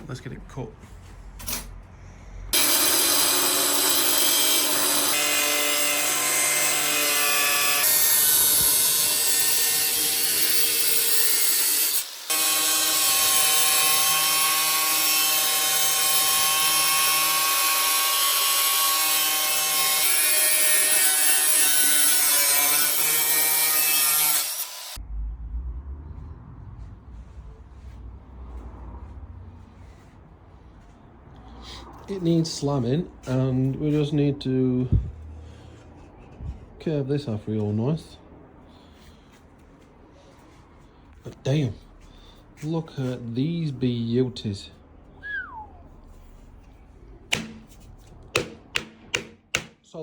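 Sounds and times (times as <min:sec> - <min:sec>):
power tool cutting metal: 0:02.6 - 0:25.0.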